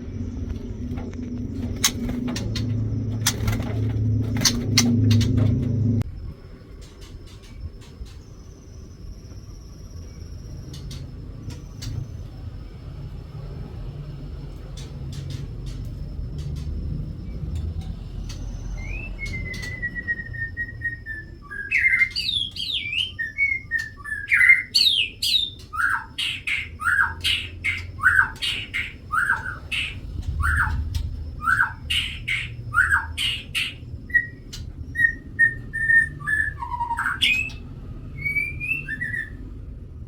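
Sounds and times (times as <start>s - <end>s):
bird whistling and calling: 18.6s - 39.5s.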